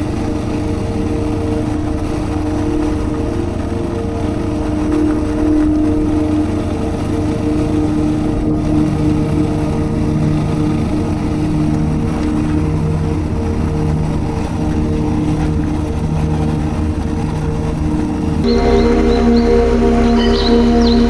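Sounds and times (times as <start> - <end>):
background music: 18.4 - 21.0.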